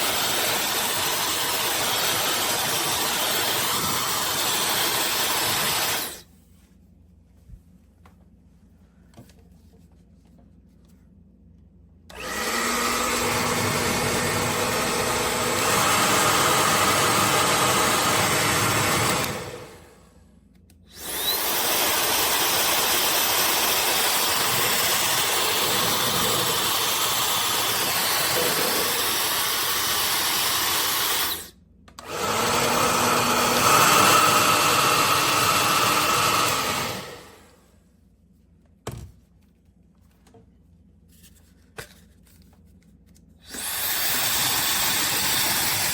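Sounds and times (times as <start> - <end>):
hair dryer running: 0.0 - 6.2, 12.1 - 20.1, 21.0 - 37.6, 43.5 - 45.9.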